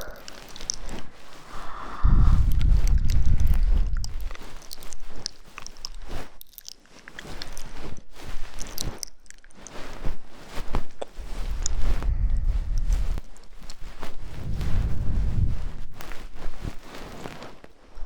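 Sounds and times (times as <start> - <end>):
low rumble of handling noise: 0.0 - 6.1, 10.6 - 18.0
crackly clicks and rubbing: 0.0 - 18.0.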